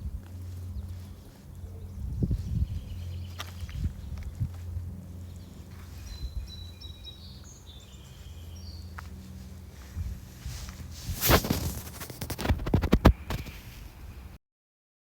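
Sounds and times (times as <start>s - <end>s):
steady low rumble: 0.0s - 14.4s
birds chirping: 0.2s - 9.9s
loud sharp crackles and knocks: 11.2s - 13.6s.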